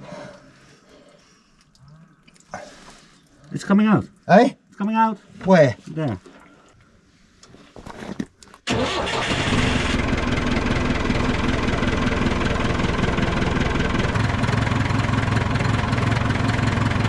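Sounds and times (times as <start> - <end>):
diesel engine idling: 8.7 - 17.0.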